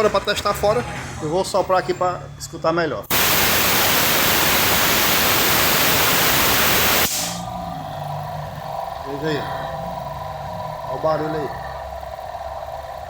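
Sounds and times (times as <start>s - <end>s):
compressed air blast: 3.1s - 7.5s
alternator bearing droning hum: 3.1s - 13.0s.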